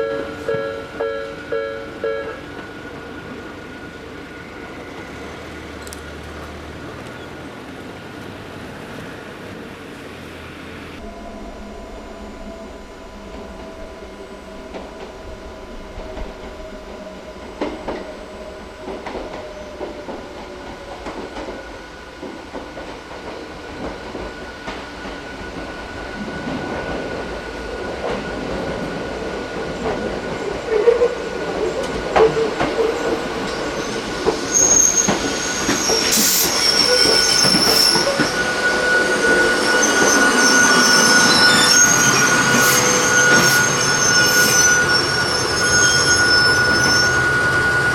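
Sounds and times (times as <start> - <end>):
electric train approaching: 0.0 - 47.9
train wheels squealing: 13.1 - 47.9.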